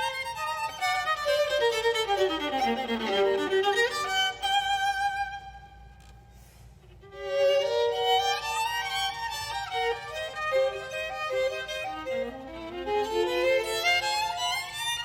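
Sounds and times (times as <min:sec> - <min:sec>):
violin playing classical piece: 0:00.0 - 0:15.0.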